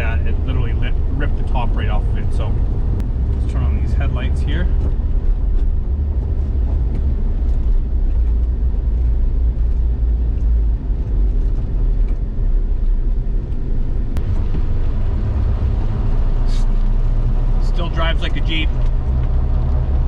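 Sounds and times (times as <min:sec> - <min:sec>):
car engine rumble: 0:00.0 - 0:20.0
tire road noise: 0:00.0 - 0:20.0.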